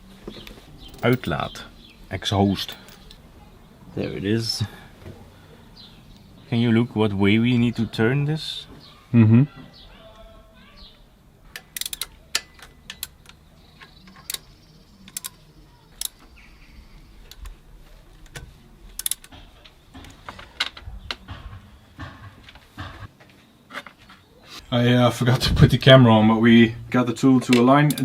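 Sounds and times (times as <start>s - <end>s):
metallic clicks and taps of tools: 11.5s - 14.5s, 15.1s - 15.4s, 18.2s - 21.3s, 27.4s - 28.0s.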